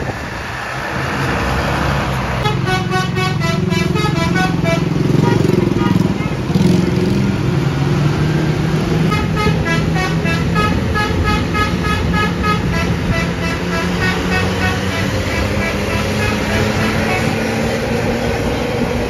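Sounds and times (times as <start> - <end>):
bus engine running: 0.0 - 19.0
bus horn playing a tune: 2.4 - 6.6, 9.0 - 18.1.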